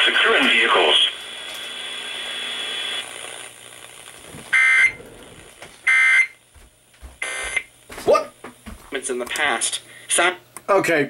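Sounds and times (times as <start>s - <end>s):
buzzy digital bursts: 1.8s - 6.4s.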